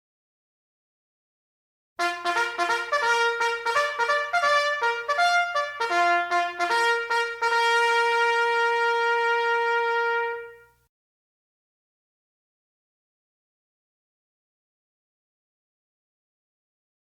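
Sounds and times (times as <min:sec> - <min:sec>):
brass horn fanfare: 0:02.0 - 0:10.9.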